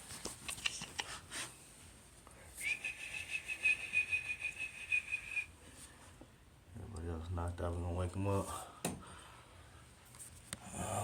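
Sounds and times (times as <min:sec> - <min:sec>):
person whistling high note: 0:02.6 - 0:05.5.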